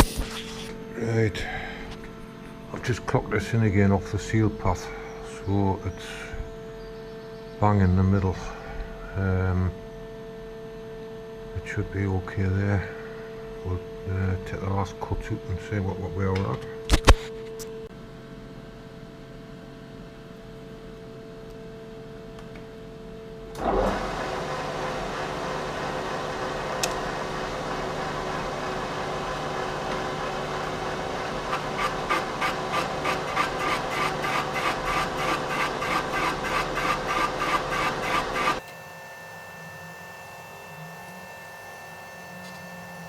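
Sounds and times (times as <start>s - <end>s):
machine tool scraping cut: 0.0s - 0.8s, 31.5s - 38.8s.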